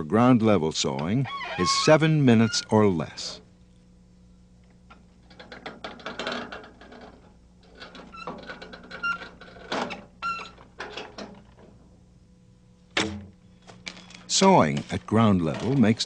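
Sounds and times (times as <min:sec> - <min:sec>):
low steady hum: 0:00.0 - 0:16.0
short squeaks: 0:01.1 - 0:02.8, 0:08.0 - 0:10.7
metal parts clanking and rattling: 0:05.2 - 0:11.8, 0:13.0 - 0:16.0.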